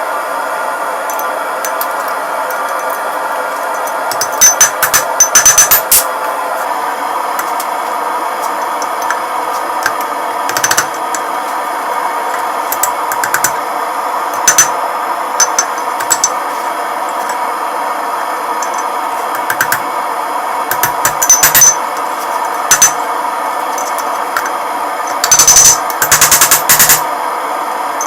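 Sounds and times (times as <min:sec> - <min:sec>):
steady roar of forge: 0:00.0 - 0:28.0
hammer tapping on metal: 0:03.8 - 0:06.1, 0:09.8 - 0:11.3, 0:12.7 - 0:13.6, 0:14.4 - 0:14.7, 0:18.6 - 0:19.8, 0:20.7 - 0:21.8, 0:22.7 - 0:23.0, 0:25.1 - 0:27.0.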